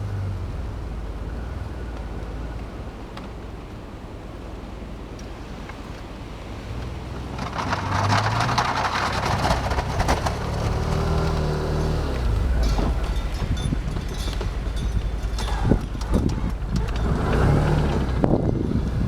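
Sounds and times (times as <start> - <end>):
engine running under load: 0.0 - 19.0
plow blade scraping snow: 5.2 - 19.0.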